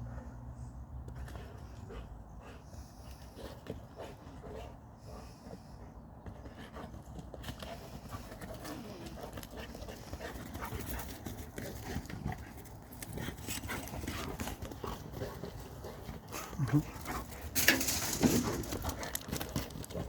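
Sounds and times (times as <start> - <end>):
dogs panting: 1.1 - 20.0.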